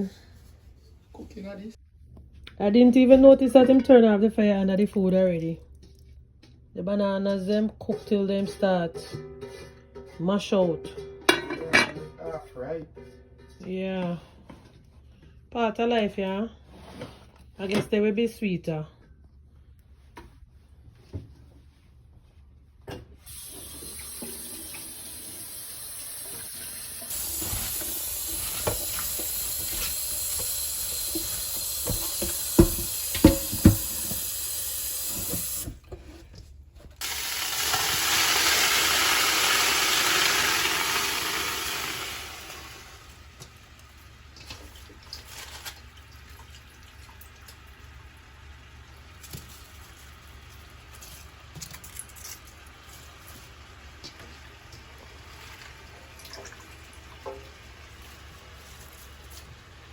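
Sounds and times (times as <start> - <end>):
kitchenware knocks: 10.7 - 12.2, 31.2 - 34.2
tap water running into sink: 23.3 - 35.8, 37.0 - 43.6, 54.0 - 58.3.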